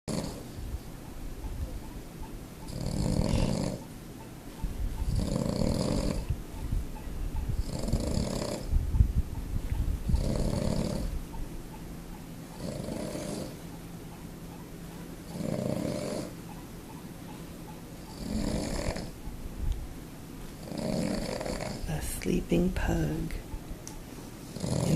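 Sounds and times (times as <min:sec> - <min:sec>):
dog snoring: 0:00.1 - 0:00.6, 0:02.6 - 0:03.9, 0:05.0 - 0:06.3, 0:07.4 - 0:08.8, 0:10.1 - 0:11.2, 0:12.6 - 0:13.6, 0:15.2 - 0:16.6, 0:18.0 - 0:19.3, 0:20.6 - 0:21.9, 0:24.4 - 0:24.9.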